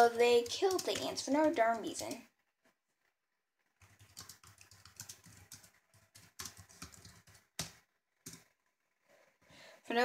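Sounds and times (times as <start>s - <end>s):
typing on laptop keyboard: 0.0s - 2.3s, 3.8s - 8.5s.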